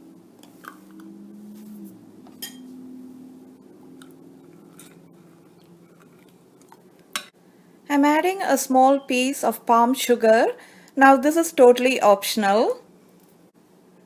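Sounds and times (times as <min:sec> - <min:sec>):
faint low hum: 0:00.0 - 0:14.0
spoon clinking against dish: 0:02.4 - 0:02.7.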